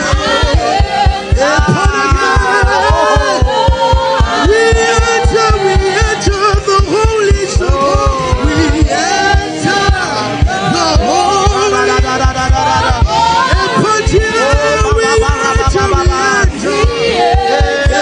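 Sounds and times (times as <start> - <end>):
fast low drum beat: 0.0 - 18.0
gospel worship music: 0.0 - 18.0.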